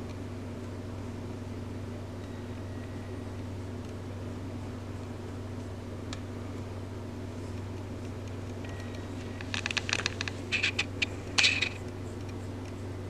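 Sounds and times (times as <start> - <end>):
steady low hum: 0.0 - 13.0
paintbrush clicks and scrapes: 9.5 - 11.8.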